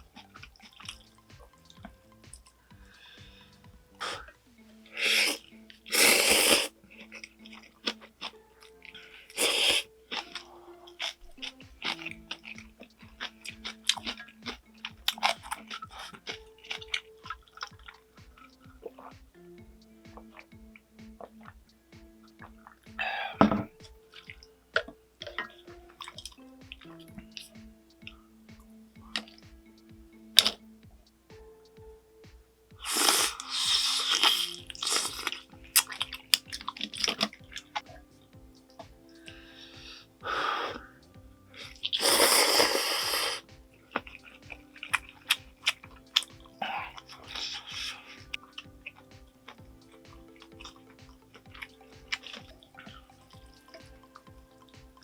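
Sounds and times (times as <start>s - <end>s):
chewing and crunching food: 0.0s - 29.8s, 30.4s - 31.0s, 32.8s - 55.0s
soft background music: 0.0s - 55.0s
noodles slurped: 3.2s - 19.2s, 32.8s - 38.0s, 40.6s - 55.0s.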